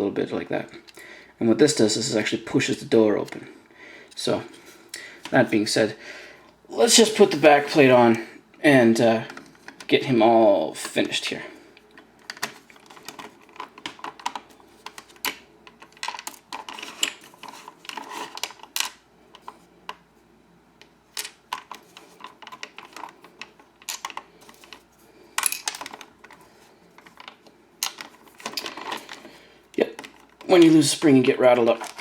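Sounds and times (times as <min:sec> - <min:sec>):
plastic parts clicking and clattering: 0:09.2 - 0:09.9, 0:11.8 - 0:20.0, 0:20.8 - 0:32.0.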